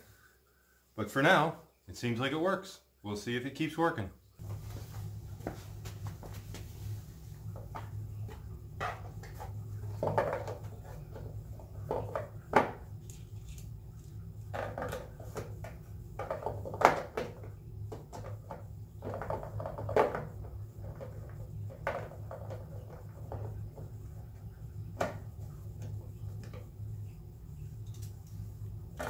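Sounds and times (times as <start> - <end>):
steady low hum: 4.2 - 29.0
knocks and clatter of handling: 7.5 - 12.9, 14.5 - 23.9.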